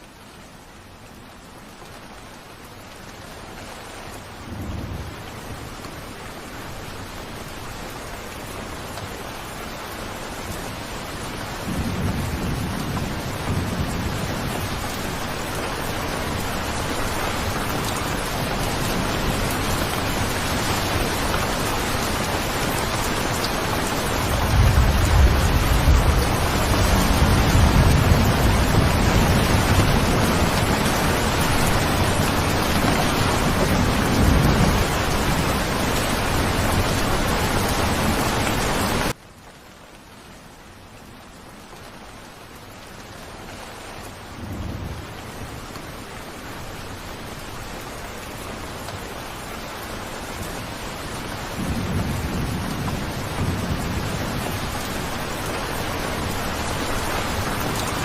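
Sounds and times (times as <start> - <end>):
heavy rain: 0.0 - 58.0
rolling thunder: 24.2 - 38.3.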